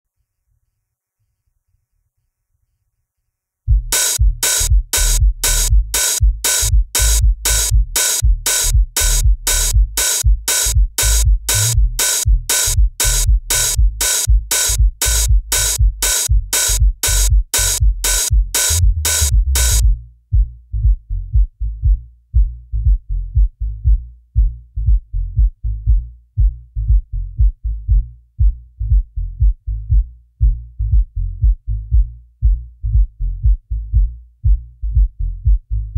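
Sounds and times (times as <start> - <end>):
electronic music with drum machine beat: 3.7 - 20.0
pulsing bass beat: 3.7 - 35.9.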